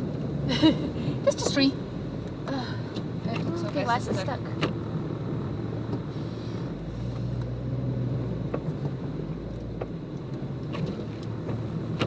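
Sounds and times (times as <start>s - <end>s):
vehicle engine running under load: 0.0s - 12.0s.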